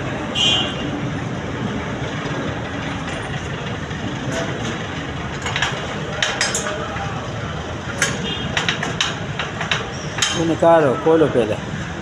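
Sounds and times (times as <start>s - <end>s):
mechanical background noise: 0.0s - 12.0s
metal tools knocking and clinking: 5.4s - 6.9s, 7.9s - 10.6s.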